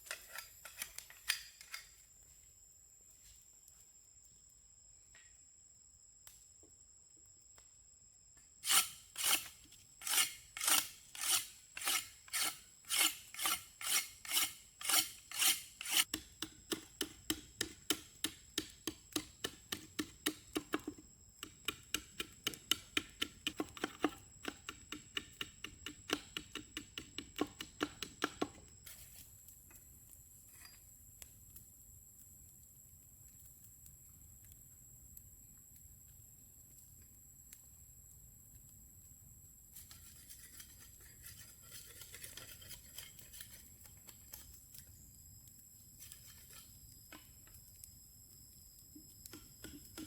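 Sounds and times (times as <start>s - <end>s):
rasp filing strokes: 8.6s - 16.1s, 39.9s - 43.7s.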